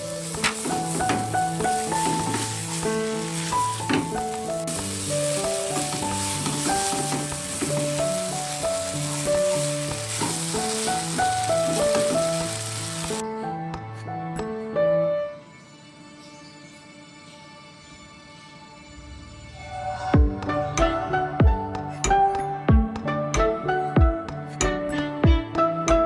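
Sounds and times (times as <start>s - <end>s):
food sizzling in hot oil: 0.0s - 13.2s
background music: 0.0s - 26.0s.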